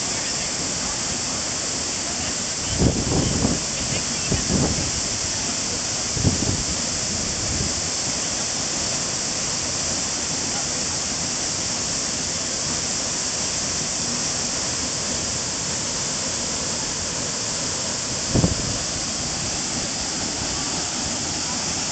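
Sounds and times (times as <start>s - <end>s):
waterfall rushing: 0.0s - 21.9s.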